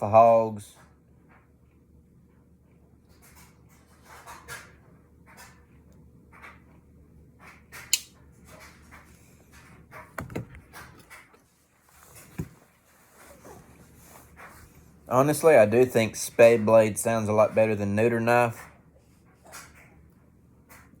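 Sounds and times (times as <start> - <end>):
sharp click: 7.9 - 8.1.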